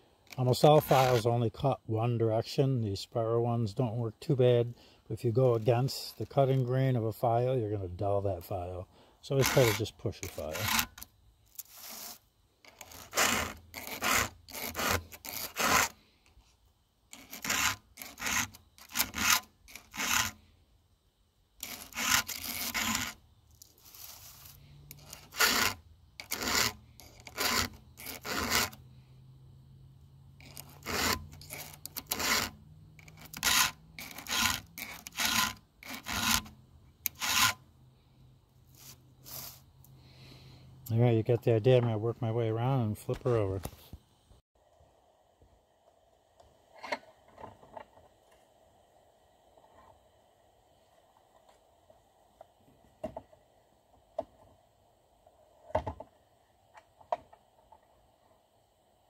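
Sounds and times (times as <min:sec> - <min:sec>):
file rasping on chainsaw teeth: 0:00.8 - 0:01.2, 0:09.4 - 0:16.0, 0:17.1 - 0:20.4, 0:21.6 - 0:23.2, 0:23.8 - 0:28.8, 0:30.4 - 0:36.5, 0:37.1 - 0:37.6.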